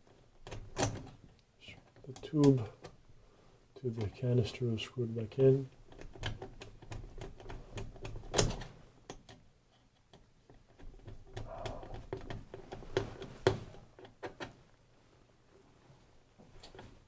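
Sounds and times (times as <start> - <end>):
plastic parts clicking and knocking: 5.7 - 14.6.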